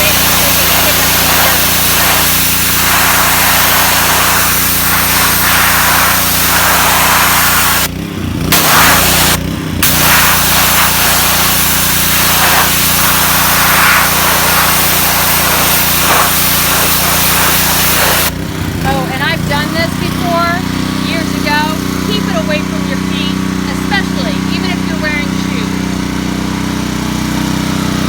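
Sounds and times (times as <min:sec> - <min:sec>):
high-pressure water spray hiss: 0:00.0 - 0:07.9, 0:08.5 - 0:18.3
pressure washer engine running: 0:00.0 - 0:28.0.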